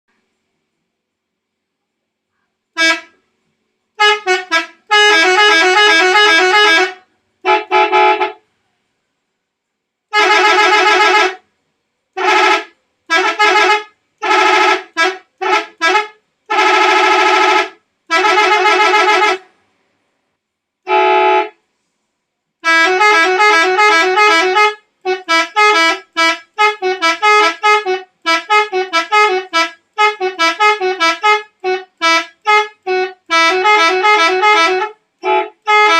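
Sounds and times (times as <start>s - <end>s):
musical air-horn blasts: 2.8s - 3.2s, 4.0s - 8.4s, 10.1s - 11.4s, 12.2s - 19.5s, 20.9s - 21.9s, 22.6s - 35.9s.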